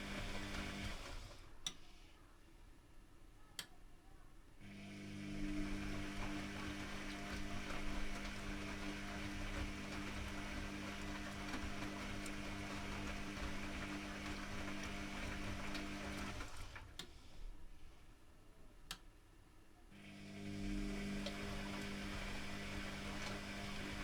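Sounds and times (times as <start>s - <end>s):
washing machine motor hum: 0.0s - 1.5s, 4.6s - 17.7s, 20.0s - 24.0s.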